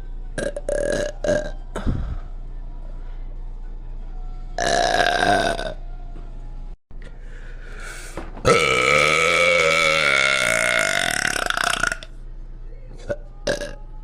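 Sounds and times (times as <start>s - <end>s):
person burping: 0.4s - 1.9s, 4.6s - 5.8s, 8.5s - 12.1s, 13.0s - 13.8s.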